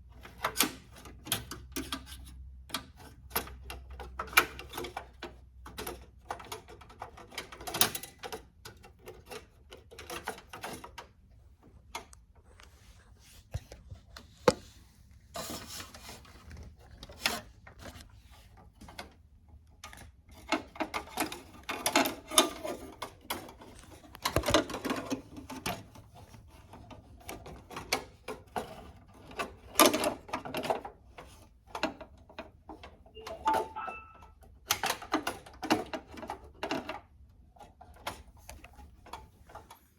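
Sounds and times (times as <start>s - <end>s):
clicks and knocks of plastic: 16.2s - 33.0s.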